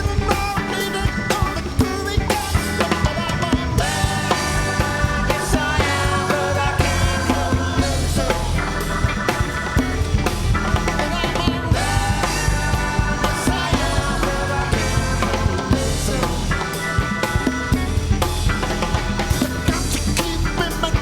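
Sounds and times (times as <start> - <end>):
person singing: 0.0 - 9.1, 10.8 - 17.2
drums: 0.0 - 21.0
rock music: 0.0 - 21.0.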